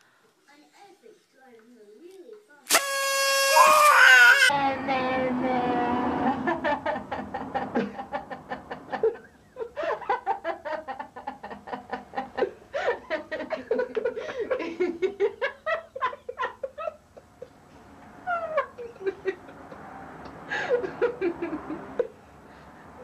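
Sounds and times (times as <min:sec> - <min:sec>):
child laughing hard: 0:02.7 - 0:04.5.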